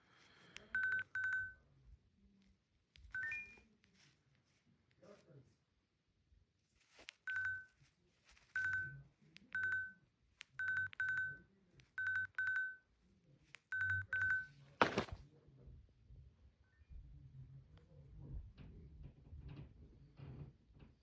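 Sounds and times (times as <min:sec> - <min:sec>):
smartwatch electronic beeps: 0:00.6 - 0:01.6, 0:03.1 - 0:03.6, 0:07.3 - 0:07.8, 0:08.5 - 0:12.8, 0:13.7 - 0:14.5.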